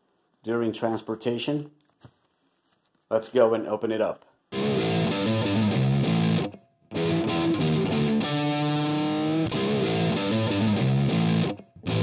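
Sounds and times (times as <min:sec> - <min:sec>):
instrumental music with electric guitar: 0:04.5 - 0:12.0.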